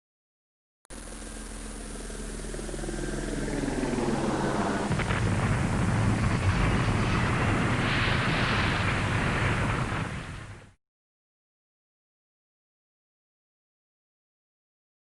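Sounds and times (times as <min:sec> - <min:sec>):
aircraft engine drone: 0:00.9 - 0:10.7.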